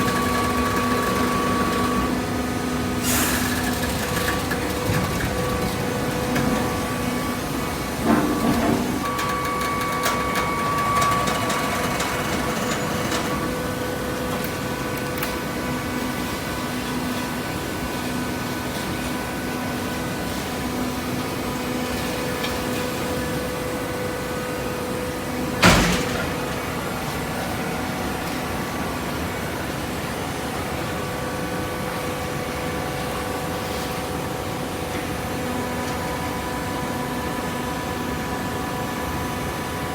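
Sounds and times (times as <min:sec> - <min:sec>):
hydraulic baler hum: 0:00.0 - 0:18.5, 0:19.2 - 0:29.0
machine knocks: 0:25.6 - 0:27.0.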